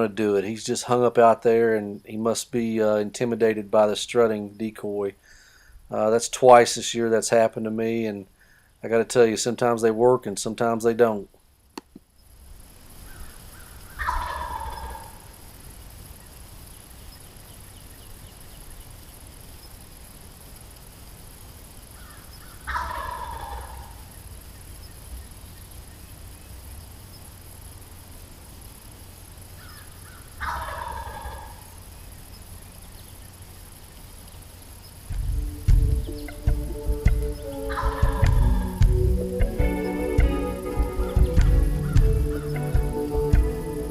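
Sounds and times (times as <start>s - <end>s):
turkey gobbling: 13.9s - 15.3s, 22.6s - 24.0s, 30.4s - 31.7s, 35.6s - 43.8s.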